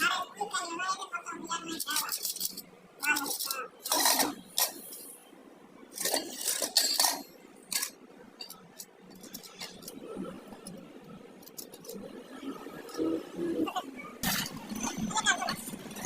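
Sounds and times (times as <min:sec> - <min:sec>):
metal tools clinking: 0:01.8 - 0:05.1, 0:05.9 - 0:09.9.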